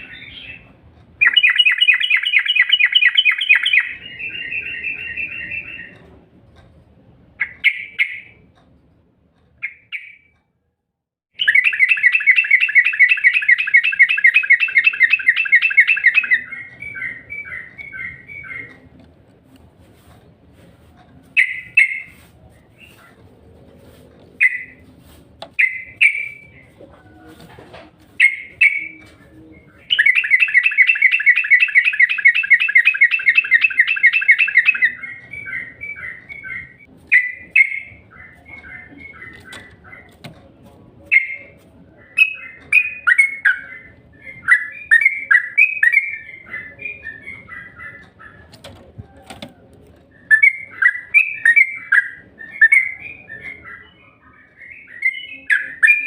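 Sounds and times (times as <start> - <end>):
bird chirping and trilling: 0.0 - 6.0, 7.4 - 8.5, 9.6 - 10.3, 11.3 - 18.9, 21.3 - 23.0, 24.4 - 24.9, 25.5 - 26.8, 28.1 - 29.0, 29.6 - 40.2, 41.0 - 48.6, 50.2 - 56.0.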